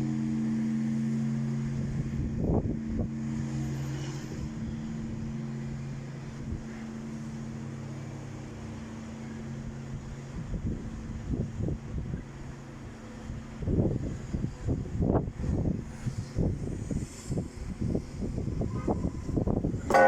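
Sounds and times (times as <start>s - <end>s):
wind gusts on microphone: 1.5s - 6.8s, 9.8s - 20.0s.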